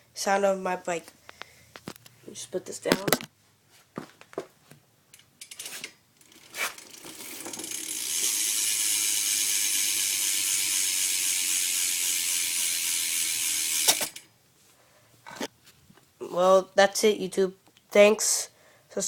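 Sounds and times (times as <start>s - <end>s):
bicycle hub ratcheting: 5.4s - 14.3s.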